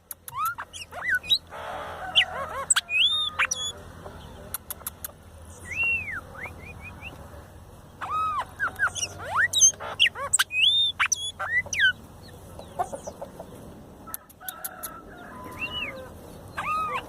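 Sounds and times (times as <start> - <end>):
sharp clicks: 0.0 - 0.8, 4.5 - 5.2
bird whistling song: 0.3 - 1.5, 2.1 - 3.8, 5.5 - 7.2, 8.0 - 12.0, 15.5 - 17.0
harsh buzzy bird call: 0.3 - 3.8.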